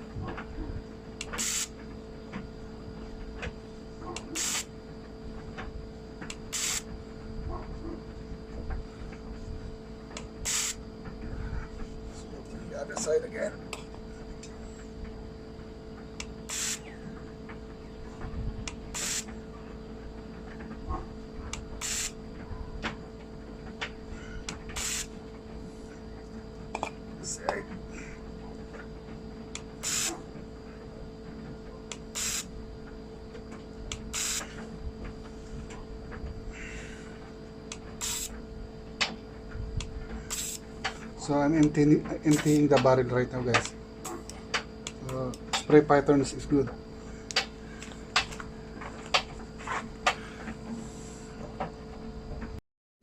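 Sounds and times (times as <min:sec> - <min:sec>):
steady electrical hum: 0:00.0 - 0:52.6
fuel injector spray hissing: 0:01.4 - 0:01.7, 0:06.5 - 0:06.8, 0:10.4 - 0:10.8, 0:16.5 - 0:16.9, 0:18.9 - 0:19.2, 0:21.8 - 0:22.1, 0:24.8 - 0:25.1, 0:29.8 - 0:30.1, 0:32.1 - 0:32.5, 0:34.1 - 0:34.5, 0:38.0 - 0:38.3, 0:40.3 - 0:40.6.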